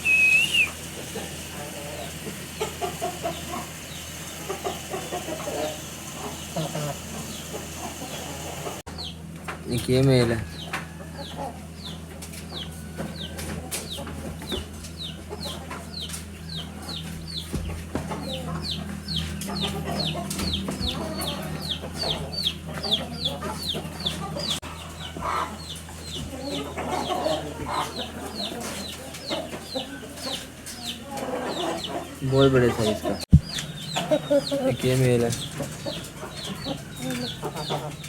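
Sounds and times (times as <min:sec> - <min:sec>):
high falling chirp: 0:00.0 - 0:00.8
chickens clucking: 0:00.0 - 0:38.0.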